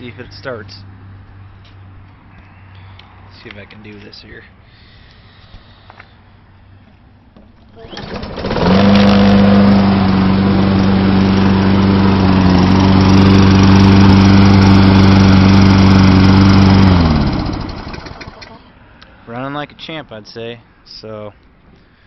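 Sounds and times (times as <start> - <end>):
engine shutting off: 7.7 - 18.7
lawn mower engine running: 7.7 - 18.7.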